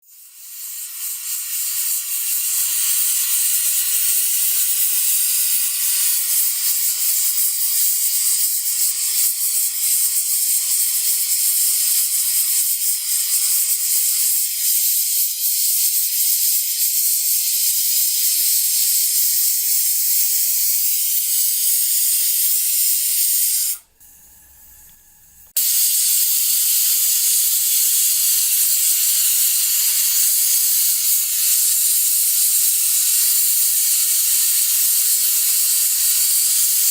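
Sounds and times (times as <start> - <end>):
pressure cooker steam hiss: 0.0 - 36.9.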